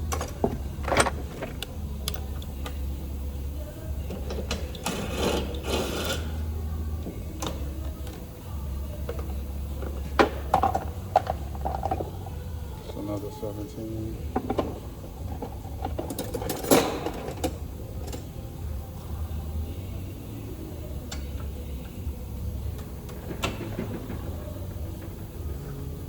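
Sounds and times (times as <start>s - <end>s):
hand tools clicking and clanking: 0.0s - 3.0s, 4.0s - 18.4s
low mechanical rumble: 0.0s - 26.0s.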